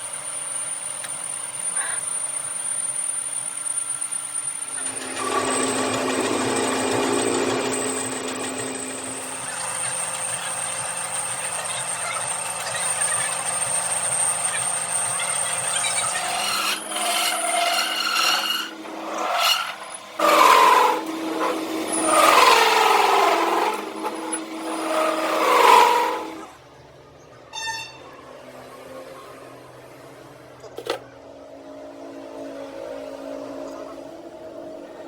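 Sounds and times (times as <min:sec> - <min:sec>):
small power tool running: 0:00.1 - 0:26.6
grinding on metal: 0:04.7 - 0:26.6.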